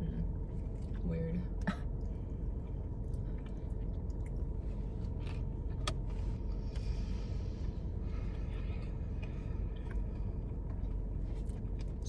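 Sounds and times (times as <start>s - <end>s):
person chewing: 2.6s - 6.9s.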